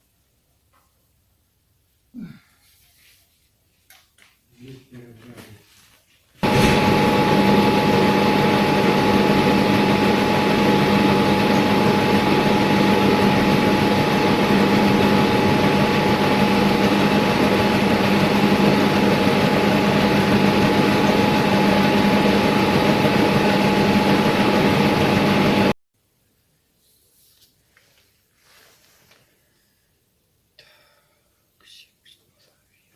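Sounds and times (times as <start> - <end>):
milling machine running: 6.4 - 25.7.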